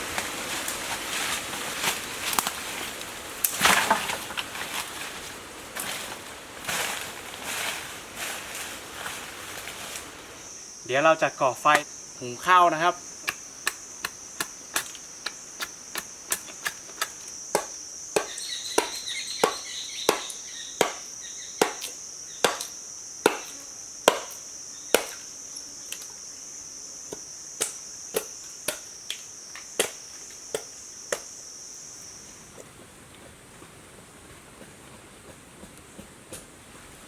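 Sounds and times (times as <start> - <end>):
high insect drone: 0.0 - 37.0
axe chopping wood: 13.2 - 25.2, 27.1 - 28.9, 29.7 - 31.3.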